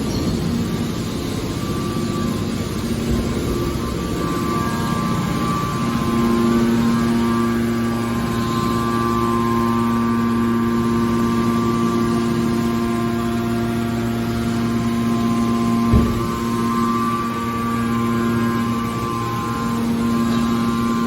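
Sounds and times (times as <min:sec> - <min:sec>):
hydraulic machinery humming: 0:00.0 - 0:21.0
thump: 0:15.9 - 0:16.4.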